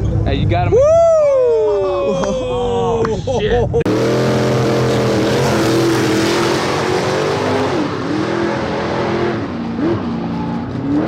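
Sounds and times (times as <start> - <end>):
race car engine running loudly: 3.8 - 11.0.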